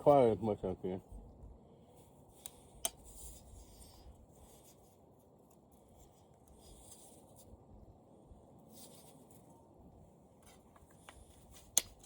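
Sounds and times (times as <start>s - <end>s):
faint scraping and rubbing: 1.8s - 7.6s, 8.2s - 9.7s
small sharp clicks: 10.8s - 12.0s.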